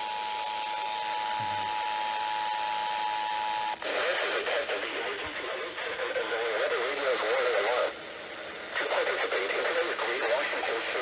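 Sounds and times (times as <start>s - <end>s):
radio hiss: 3.4s - 11.0s
faint voice on radio: 3.8s - 8.0s, 8.7s - 11.0s.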